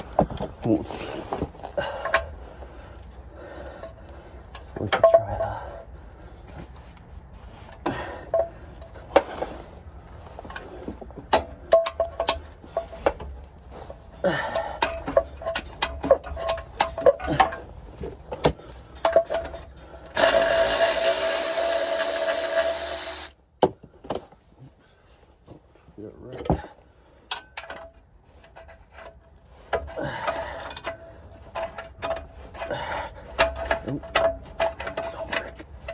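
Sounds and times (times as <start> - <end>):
power tool running: 20.1 - 23.4.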